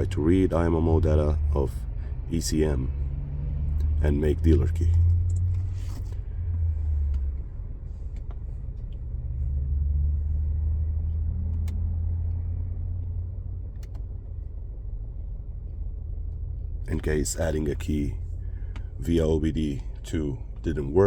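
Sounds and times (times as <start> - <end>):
low rumble: 0.0 - 21.0
faint clicks: 11.1 - 12.4, 13.0 - 14.2.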